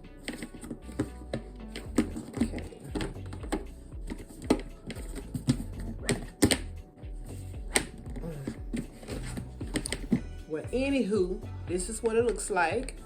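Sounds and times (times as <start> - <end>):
plastic parts clicking and knocking: 0.2 - 6.7, 7.7 - 10.2.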